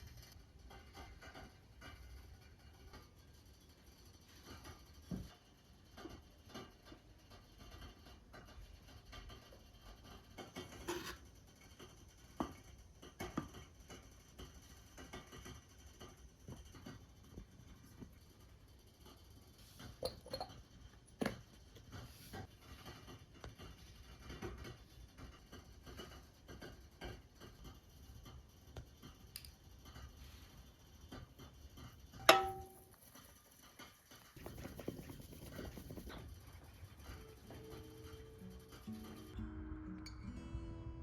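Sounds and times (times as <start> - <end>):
guitar music: 39.4 - 41.0.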